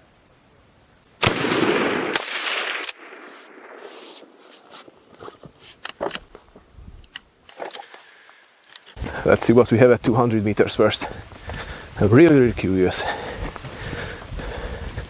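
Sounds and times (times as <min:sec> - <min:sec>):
rifle shot echoing: 0:01.2 - 0:04.4.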